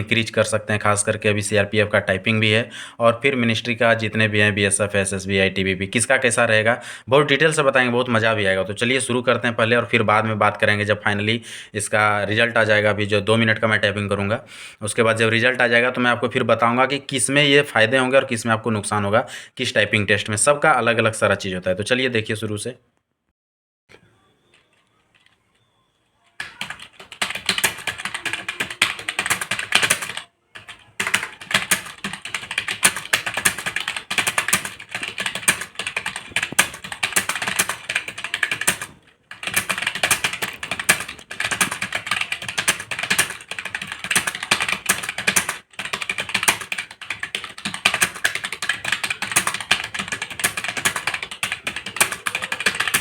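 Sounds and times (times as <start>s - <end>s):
fast typing on keyboard: 0.0s - 1.8s, 26.4s - 53.0s.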